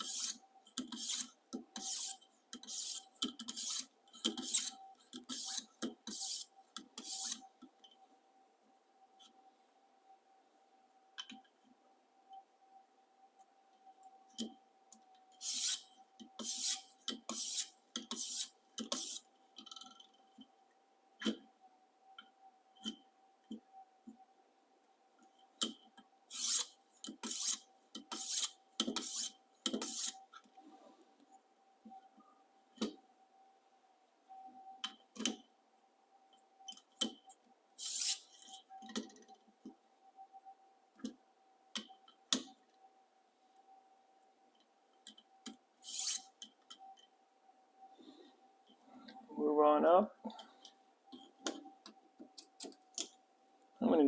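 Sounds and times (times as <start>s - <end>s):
stone rasping along blade: 0.0s - 7.4s, 16.4s - 19.2s, 26.3s - 30.2s
faint steady hum: 0.0s - 54.0s.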